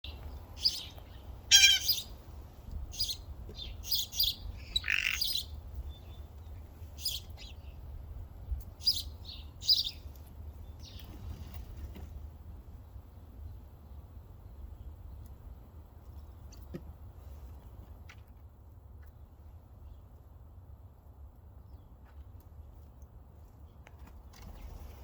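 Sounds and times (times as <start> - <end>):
blue jay calls: 0.6 - 2.2, 2.9 - 6.2, 7.0 - 7.7, 8.8 - 10.1.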